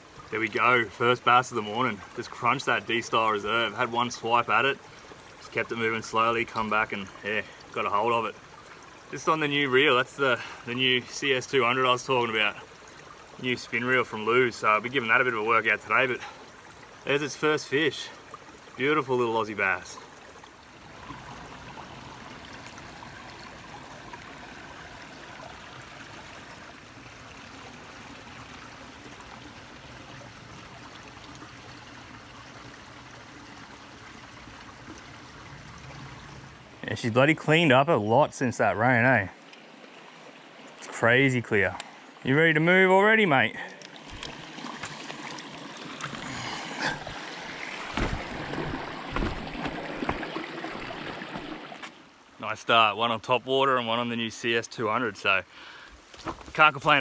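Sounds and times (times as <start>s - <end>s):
creek water over rocks: 0.0s - 37.6s, 38.6s - 57.0s
dull thumps and knocks: 47.9s - 51.6s.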